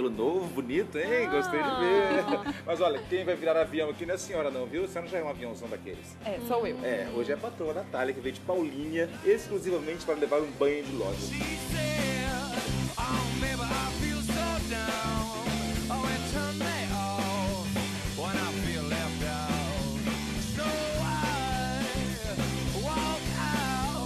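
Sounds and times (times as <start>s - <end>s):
upbeat rock music: 0.0s - 24.0s.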